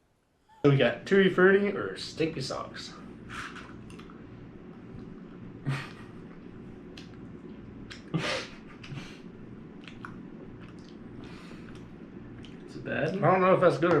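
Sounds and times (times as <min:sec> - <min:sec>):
chewing with wet clicks: 0:03.7 - 0:04.2, 0:09.8 - 0:12.7.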